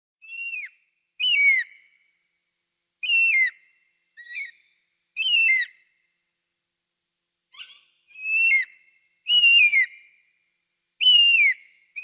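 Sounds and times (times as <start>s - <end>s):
eagle calling: 0.2s - 2.0s, 3.0s - 5.8s, 7.5s - 10.1s, 11.0s - 12.0s.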